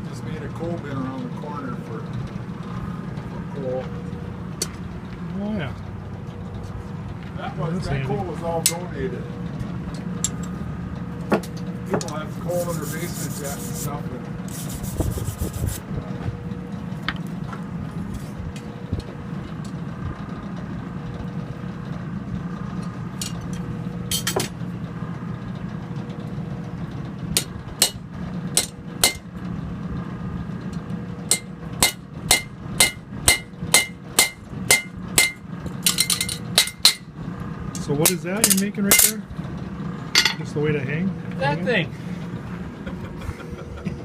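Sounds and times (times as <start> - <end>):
steady low rumble: 0.0 - 40.4
hammer striking iron on anvil: 27.4 - 28.0, 28.6 - 29.3, 31.3 - 37.1.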